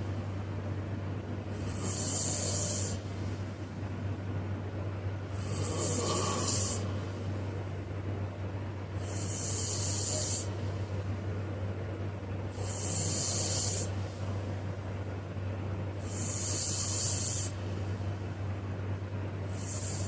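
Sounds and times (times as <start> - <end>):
steady low hum: 0.0 - 20.0
man snoring: 1.5 - 3.0, 5.3 - 7.0, 9.0 - 10.5, 12.5 - 13.9, 16.0 - 17.6, 19.5 - 20.0.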